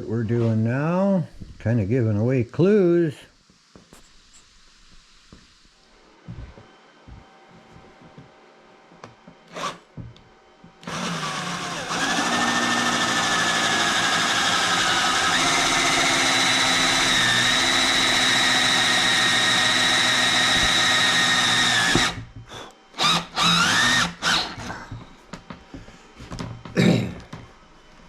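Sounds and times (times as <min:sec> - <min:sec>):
electric drill running: 0:09.5 - 0:09.9, 0:10.8 - 0:22.3, 0:23.0 - 0:24.8.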